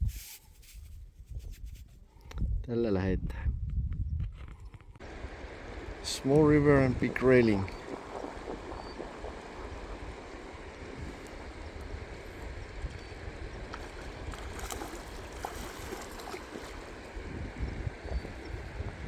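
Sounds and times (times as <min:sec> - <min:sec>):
river water running: 0:05.0 - 0:19.0.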